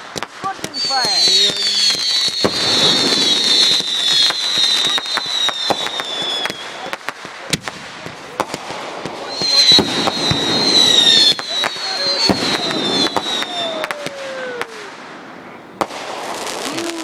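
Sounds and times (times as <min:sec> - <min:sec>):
firework bang: 0:00.0 - 0:17.0
fireworks crackling pops: 0:00.0 - 0:17.0
fireworks whistling: 0:00.0 - 0:17.0.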